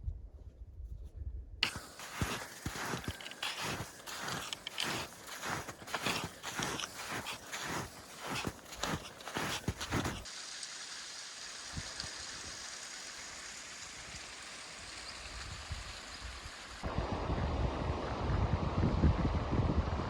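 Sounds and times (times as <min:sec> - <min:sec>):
footsteps on rock: 0:01.6 - 0:10.2
rushing water hiss: 0:01.6 - 0:16.9
wind buffeting microphone: 0:17.0 - 0:20.0.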